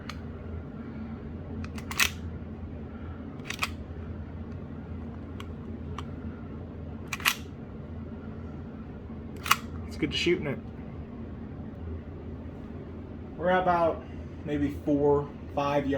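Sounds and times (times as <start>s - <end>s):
steady low hum: 0.0s - 15.9s
metallic pistol clicks: 1.7s - 2.2s.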